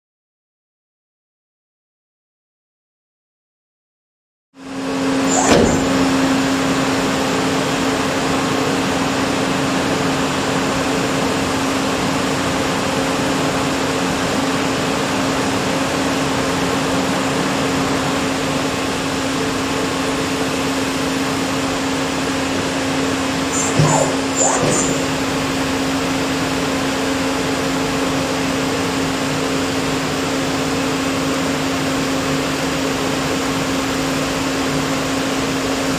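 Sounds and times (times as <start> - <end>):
lathe machine hum and hiss: 4.7 - 35.9
tool sweep: 5.2 - 6.5, 23.5 - 25.2.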